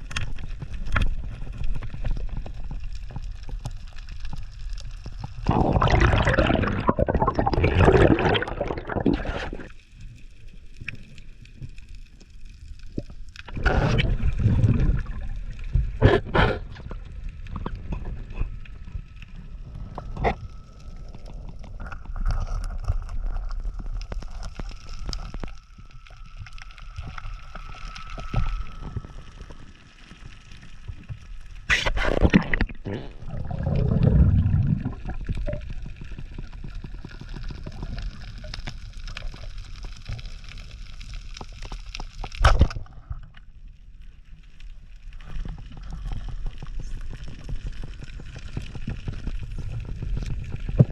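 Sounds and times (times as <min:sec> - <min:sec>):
water sloshing and gurgling: 0:04.9 - 0:10.0, 0:13.0 - 0:40.3
faint steady high tone: 0:25.6 - 0:30.3.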